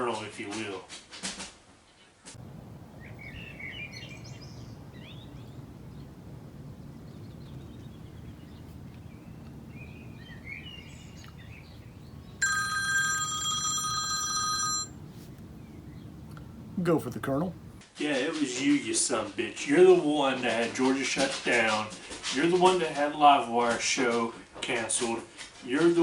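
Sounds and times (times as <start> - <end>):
birds chirping: 2.4 - 17.8
telephone ringing: 11.1 - 17.8.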